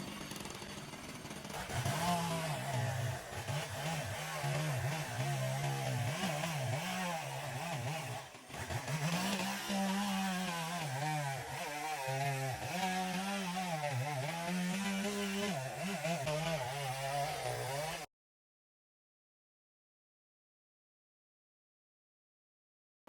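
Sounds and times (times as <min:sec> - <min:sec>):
chainsaw revving: 0:00.0 - 0:18.1.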